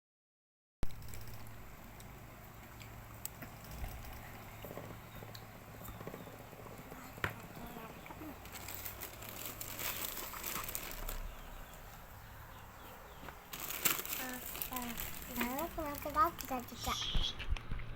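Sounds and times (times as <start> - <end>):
plastic packaging crinkling: 7.2 - 12.1, 13.2 - 17.0.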